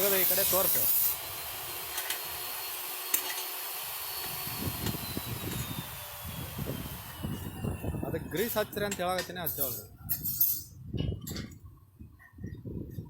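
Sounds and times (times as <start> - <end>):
steady hiss: 0.0 - 1.2.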